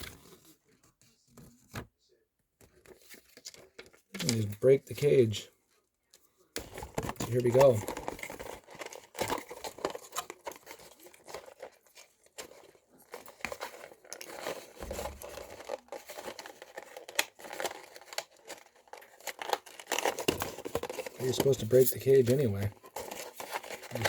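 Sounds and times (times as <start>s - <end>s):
plastic packaging crinkling and tearing: 6.6s - 24.0s.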